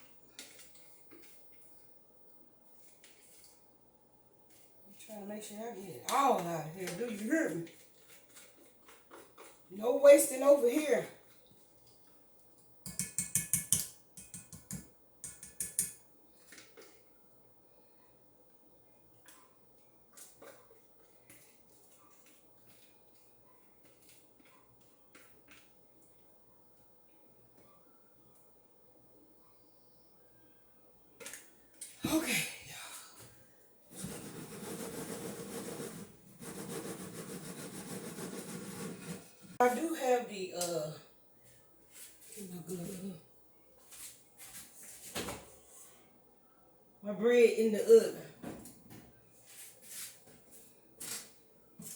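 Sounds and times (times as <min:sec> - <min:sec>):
utensil scraping a bowl: 0:12.9 - 0:16.0, 0:33.9 - 0:39.7.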